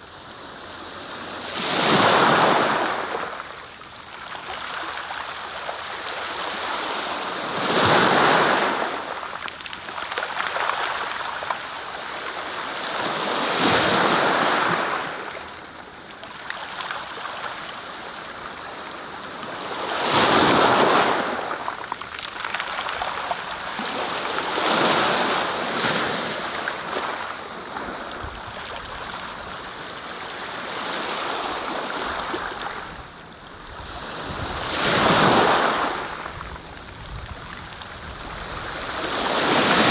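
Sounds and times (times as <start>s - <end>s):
sea waves breaking: 33.8s - 37.2s, 38.2s - 39.9s.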